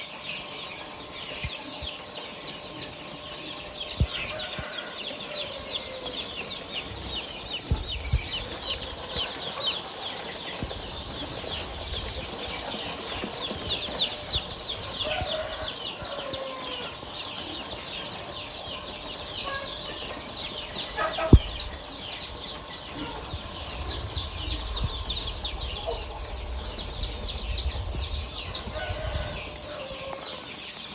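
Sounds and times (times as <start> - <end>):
chickens clucking: 0.0 - 30.9
low rumble: 22.4 - 29.7.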